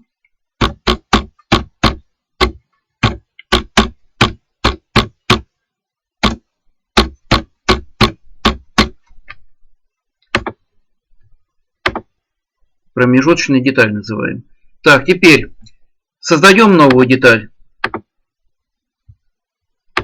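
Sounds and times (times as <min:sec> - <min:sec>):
computer keyboard typing: 0:17.8 - 0:18.1.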